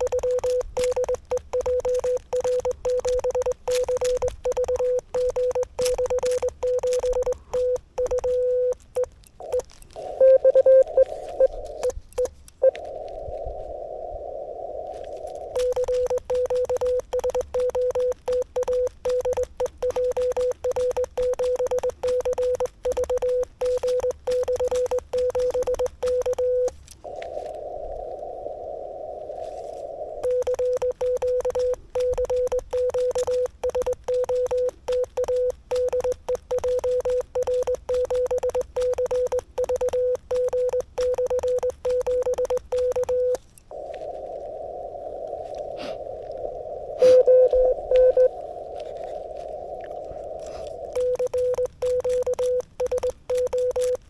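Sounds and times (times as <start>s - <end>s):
morse code sidetone beeps: 0.0s - 12.8s, 15.5s - 27.4s, 30.2s - 44.3s, 46.9s - 49.4s, 50.3s - 54.0s
radio band hiss: 9.5s - 12.0s, 43.7s - 51.0s.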